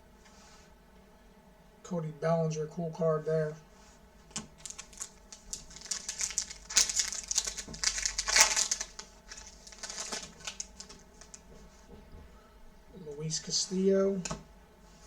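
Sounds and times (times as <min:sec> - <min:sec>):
foil wrapper crinkling: 0:04.3 - 0:11.4.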